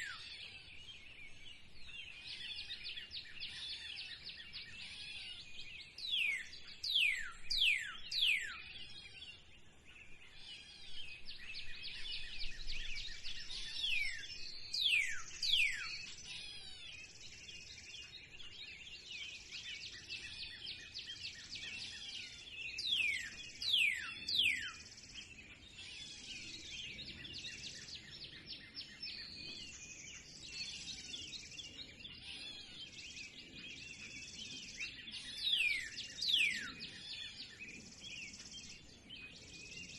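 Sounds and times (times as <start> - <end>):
small birds chirping: 0.0 - 39.9
bird song of falling whistles: 11.5 - 16.9, 22.8 - 25.2.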